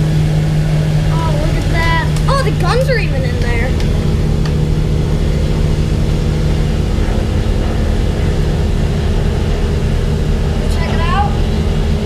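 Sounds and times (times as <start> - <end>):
piston aircraft engines droning: 0.0 - 12.0.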